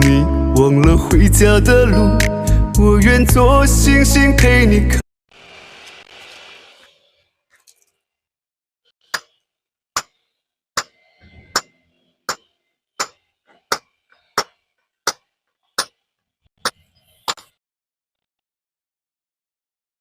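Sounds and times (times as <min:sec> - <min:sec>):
hammer striking stone: 0:10.8 - 0:16.0.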